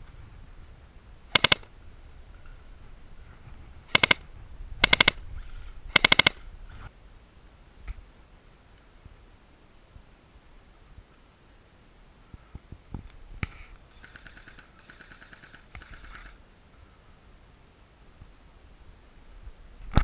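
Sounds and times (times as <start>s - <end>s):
airsoft gun automatic bursts: 1.3s - 1.7s, 3.9s - 4.2s, 4.8s - 5.2s, 5.9s - 6.4s, 13.9s - 16.4s.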